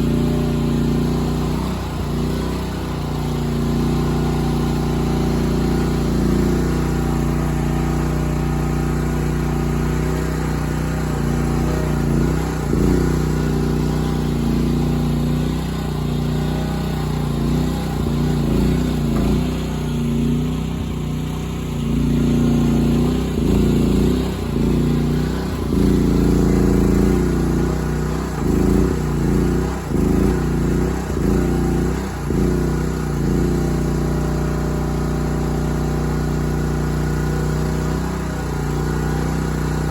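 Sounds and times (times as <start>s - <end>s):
petrol engine running: 0.0s - 39.9s.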